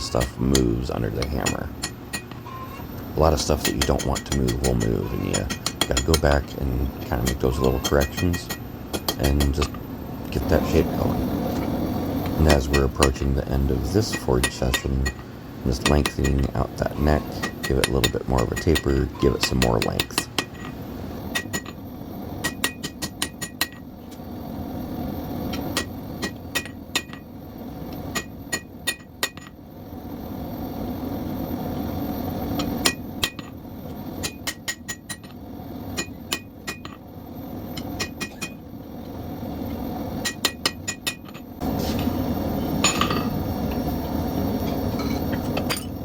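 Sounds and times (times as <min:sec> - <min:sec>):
hammer striking steel on anvil: 0:00.0 - 0:02.5, 0:03.4 - 0:09.8, 0:14.0 - 0:21.8, 0:22.4 - 0:23.8, 0:25.5 - 0:27.3, 0:28.1 - 0:29.6, 0:32.6 - 0:33.6, 0:34.2 - 0:35.4, 0:36.0 - 0:37.0, 0:37.8 - 0:38.6, 0:40.2 - 0:41.4, 0:42.8 - 0:43.4
steady rushing noise: 0:08.3 - 0:15.9.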